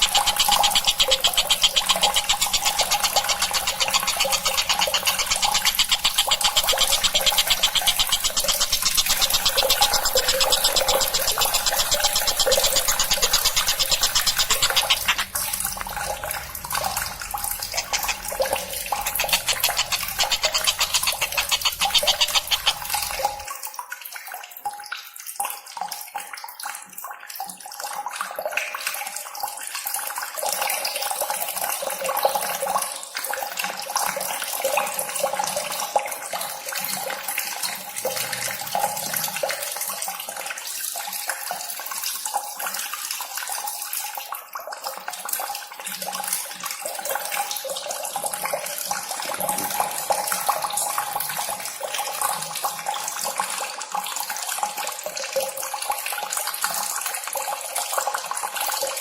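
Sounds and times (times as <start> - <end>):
splashing running water: 0.0 - 23.5.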